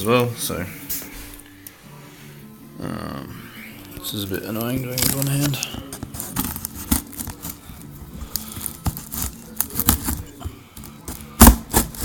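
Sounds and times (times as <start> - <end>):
blade cutting cardboard: 5.9 - 7.6, 8.3 - 10.3, 11.1 - 12.0.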